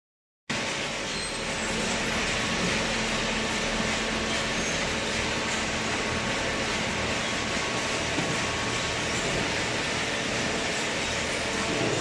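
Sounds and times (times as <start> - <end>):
hydraulic baler running: 0.5 - 12.0.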